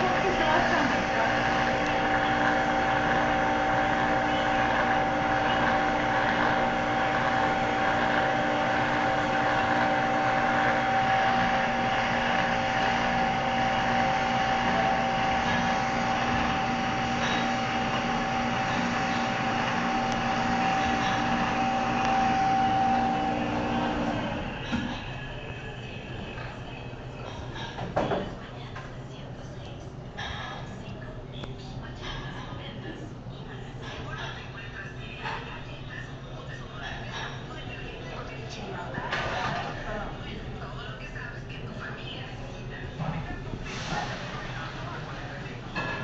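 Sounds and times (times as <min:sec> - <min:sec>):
electric blender motor running: 0:00.0 - 0:24.9.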